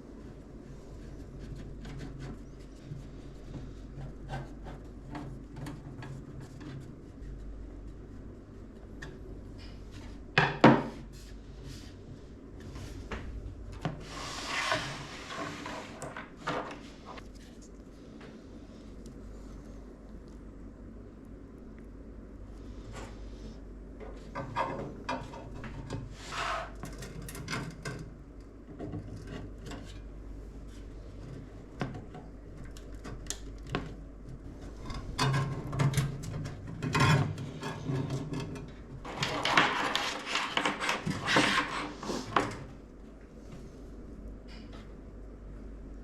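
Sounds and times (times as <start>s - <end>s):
rubbing and rattling: 34.5s - 42.1s.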